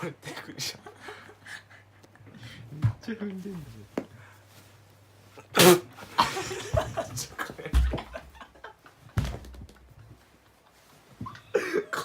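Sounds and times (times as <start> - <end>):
laughter: 0.3 - 1.8, 6.1 - 9.2
person sneezing: 5.5 - 5.9.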